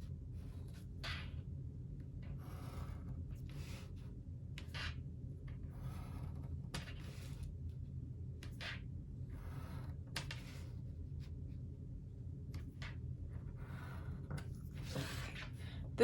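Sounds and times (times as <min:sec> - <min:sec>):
pencil scratching on paper: 0:02.3 - 0:04.1, 0:05.6 - 0:07.5, 0:09.3 - 0:11.4, 0:13.3 - 0:15.6.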